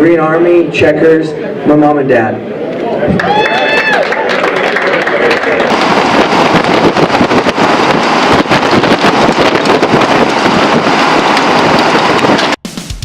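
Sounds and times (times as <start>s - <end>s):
crowd applauding: 3.0s - 12.4s.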